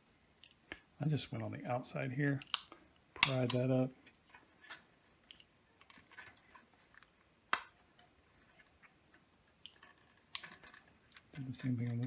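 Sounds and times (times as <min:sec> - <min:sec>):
clicks from prying wire connector: 0:02.6 - 0:03.6.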